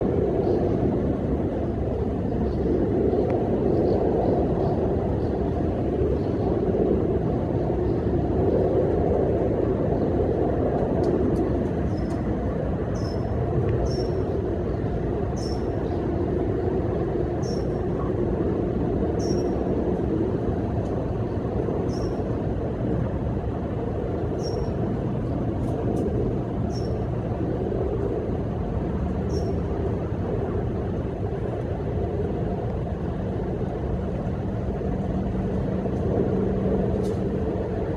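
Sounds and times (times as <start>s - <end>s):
low outdoor rumble: 0.0s - 37.9s
small bird calling: 19.2s - 19.6s, 24.4s - 24.8s, 29.3s - 29.6s.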